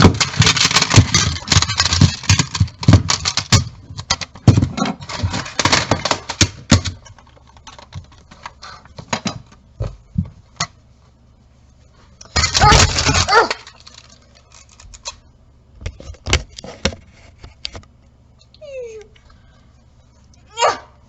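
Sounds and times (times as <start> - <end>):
small hard objects clattering: 0.0 - 9.4, 12.2 - 15.2.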